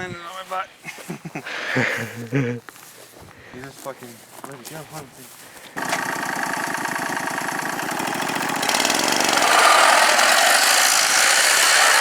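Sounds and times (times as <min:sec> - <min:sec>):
lawn mower engine revving: 0:05.8 - 0:12.0.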